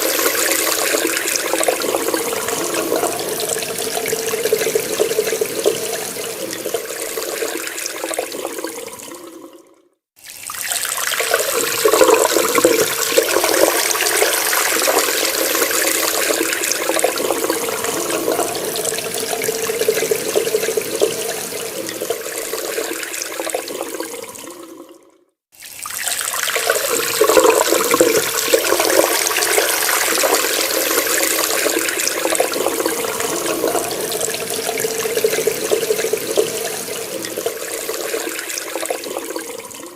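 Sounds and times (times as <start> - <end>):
tap water running: 0.0 - 39.9.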